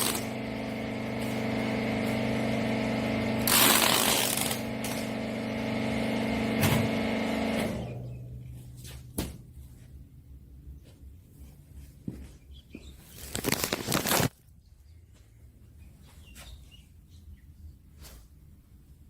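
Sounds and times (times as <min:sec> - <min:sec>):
hydraulic press motor hum: 0:00.0 - 0:08.5.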